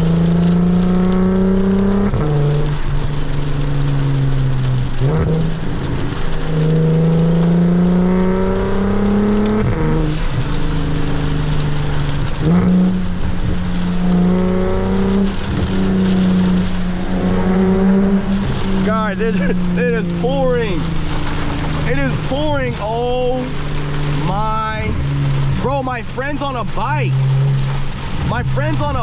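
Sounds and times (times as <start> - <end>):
car engine accelerating and shifting: 0.0 - 29.0
heavy rain and wet road hiss: 0.0 - 29.0.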